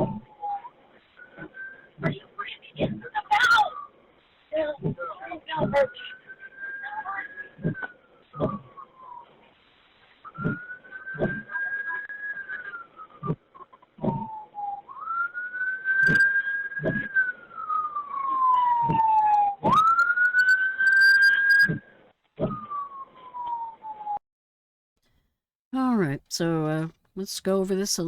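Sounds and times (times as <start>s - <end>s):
emergency vehicle siren wailing: 10.3s - 13.4s, 14.0s - 21.8s, 22.4s - 24.2s.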